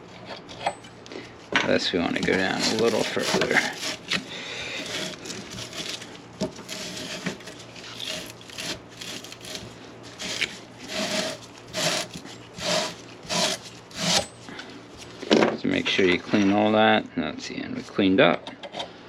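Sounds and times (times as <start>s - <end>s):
abrasive scrubbing on metal pipe: 2.0s - 14.3s.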